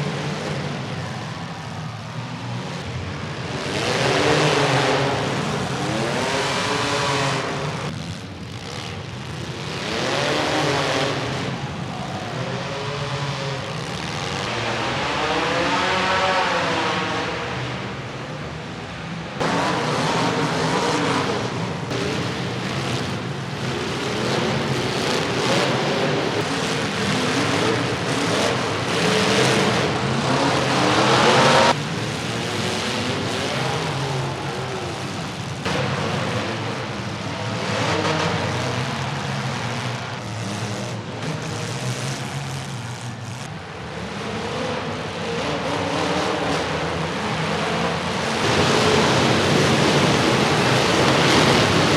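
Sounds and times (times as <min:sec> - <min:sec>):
car engines revving hard: 0:00.0 - 0:51.9
cars ramming: 0:18.9 - 0:41.8, 0:45.6 - 0:51.9.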